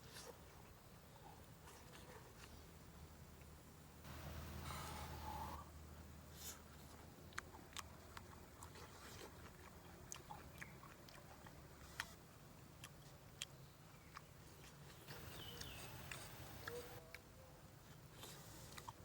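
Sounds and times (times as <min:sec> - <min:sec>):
person chewing food: 0:06.8 - 0:12.2, 0:12.8 - 0:17.2
mouth clicks: 0:15.1 - 0:17.2.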